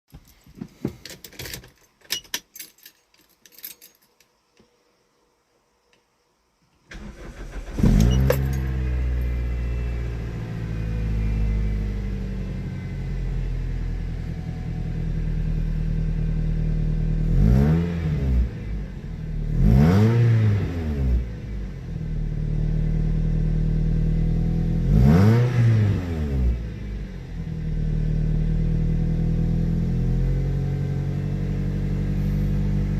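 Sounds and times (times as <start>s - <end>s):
car engine cranking and idling: 6.9s - 32.9s.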